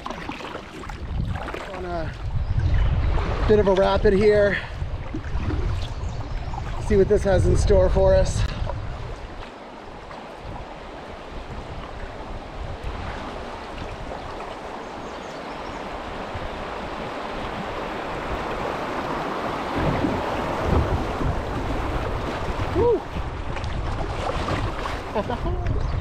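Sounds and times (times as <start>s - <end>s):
water rushing in river rapid: 0.0s - 7.2s, 8.4s - 25.8s
low thumps: 19.7s - 22.5s.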